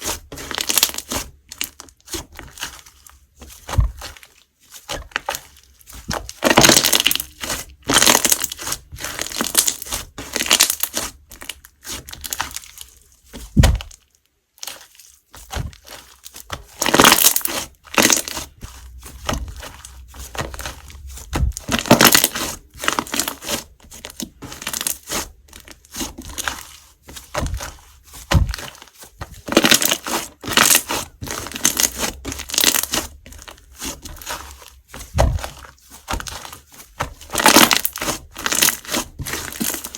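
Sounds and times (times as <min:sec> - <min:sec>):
slime squishing: 0:00.0 - 0:39.9
soft low thuds: 0:18.8 - 0:21.9, 0:28.3 - 0:28.6.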